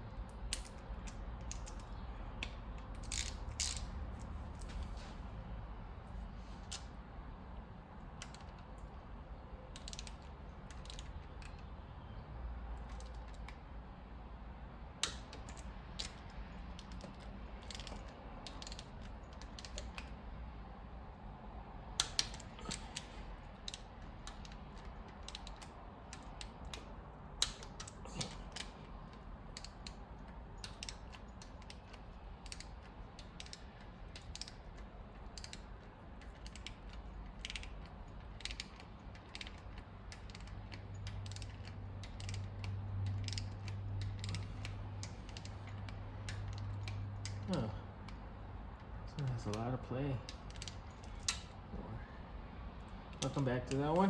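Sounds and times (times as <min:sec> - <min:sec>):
ratchet clicking: 0:00.3 - 0:04.9, 0:08.2 - 0:08.9, 0:09.7 - 0:11.7, 0:15.0 - 0:20.2, 0:22.0 - 0:48.2, 0:48.8 - 0:51.6.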